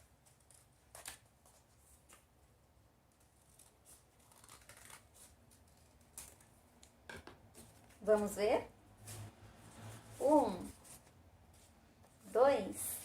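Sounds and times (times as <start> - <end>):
scissors snipping paper: 3.4 - 7.0.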